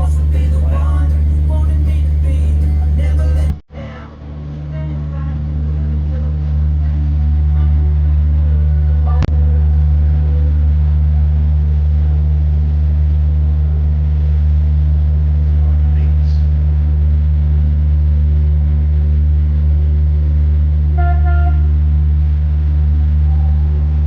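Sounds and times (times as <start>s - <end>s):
low engine drone: 0.0s - 24.0s
short horn toot: 21.0s - 21.8s.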